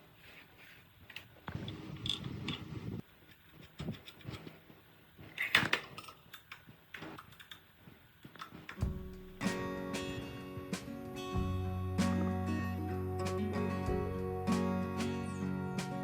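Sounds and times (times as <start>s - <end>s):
acoustic guitar music: 8.8s - 16.0s.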